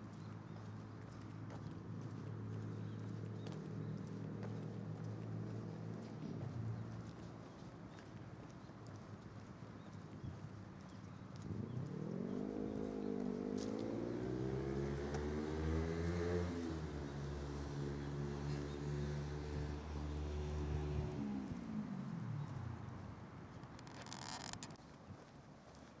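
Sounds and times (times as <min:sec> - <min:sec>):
passing vehicle engine: 0:11.5 - 0:22.8.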